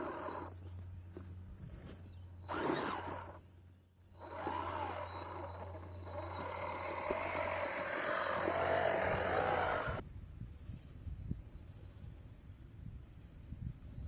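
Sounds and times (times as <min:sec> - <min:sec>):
toy truck electric motor whining: 0:00.0 - 0:00.5, 0:02.4 - 0:03.4, 0:04.0 - 0:10.0.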